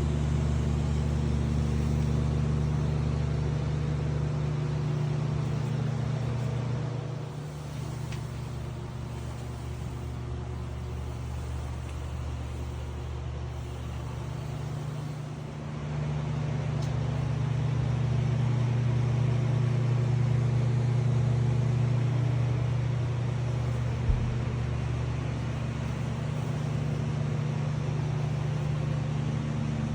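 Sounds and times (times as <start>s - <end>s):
outboard engines droning: 0.0s - 29.9s
short low thump: 23.9s - 24.5s.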